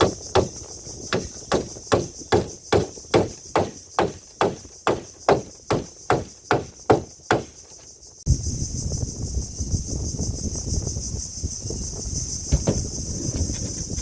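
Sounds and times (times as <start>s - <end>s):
tool striking wood: 0.0s - 7.8s.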